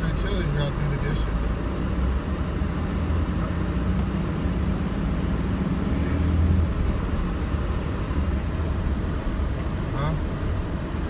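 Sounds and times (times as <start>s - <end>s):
truck engine and road rumble: 0.0s - 11.0s.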